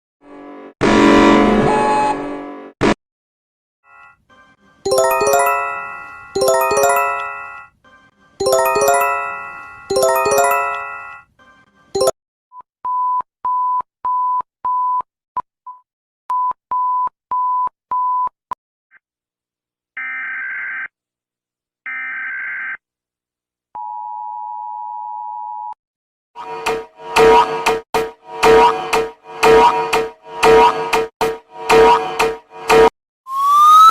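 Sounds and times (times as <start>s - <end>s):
struck chime notes: 4.9s - 7.6s, 8.4s - 11.2s
two-tone alert signal: 4.9s - 7.6s, 8.4s - 11.2s.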